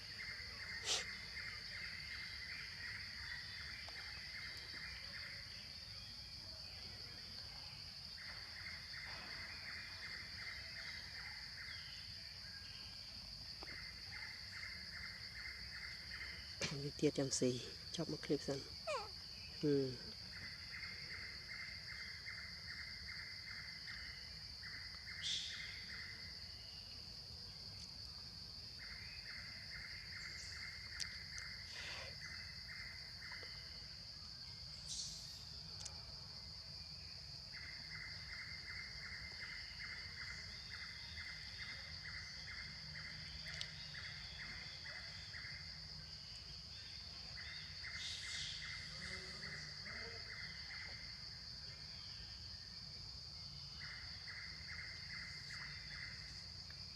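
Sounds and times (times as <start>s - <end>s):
high insect drone: 0.0s - 56.9s
rapid insect chirps: 0.0s - 56.9s
bird calls: 18.8s - 19.6s.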